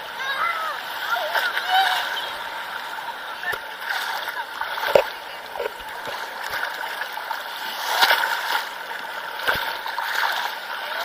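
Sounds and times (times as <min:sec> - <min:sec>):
sea water sloshing and splashing: 0:00.4 - 0:11.0.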